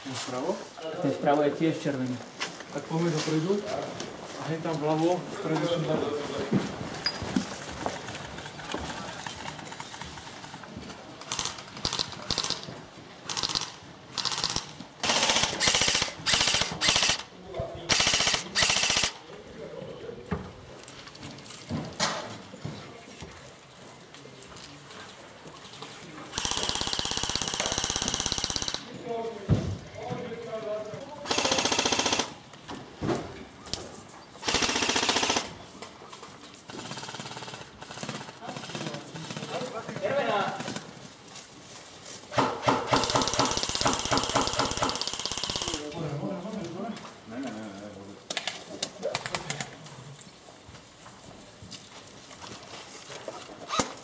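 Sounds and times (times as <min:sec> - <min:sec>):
airsoft guns firing automatic bursts: 0:11.2 - 0:12.7, 0:13.3 - 0:17.3, 0:17.9 - 0:19.2, 0:26.3 - 0:28.9, 0:31.2 - 0:32.4, 0:34.4 - 0:35.6, 0:36.7 - 0:40.9, 0:42.4 - 0:45.9.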